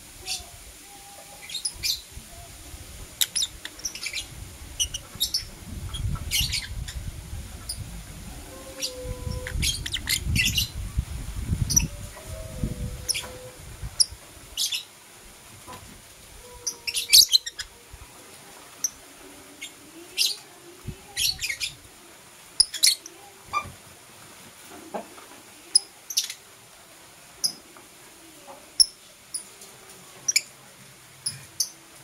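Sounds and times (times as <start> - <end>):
birds chirping: 3.2 - 7.0.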